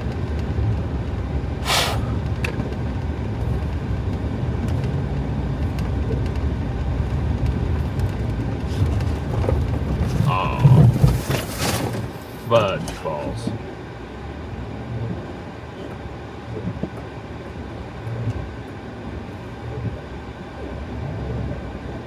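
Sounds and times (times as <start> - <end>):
engine and road rumble: 0.0 - 22.0
brief hiss: 1.6 - 2.2
loud hiss: 1.6 - 2.2.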